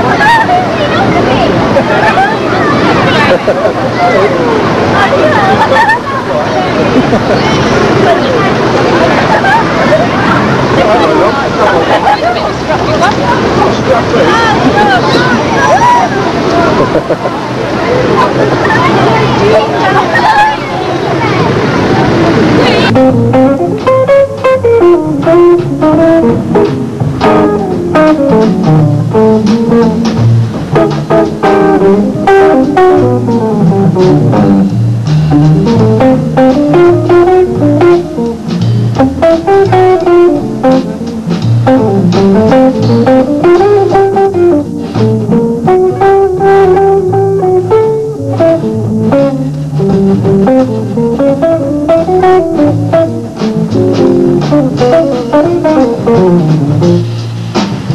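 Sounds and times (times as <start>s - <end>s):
plucked guitar melody: 0.0s - 20.7s, 22.6s - 57.9s
drums: 21.4s - 57.9s
bass guitar: 22.6s - 57.9s.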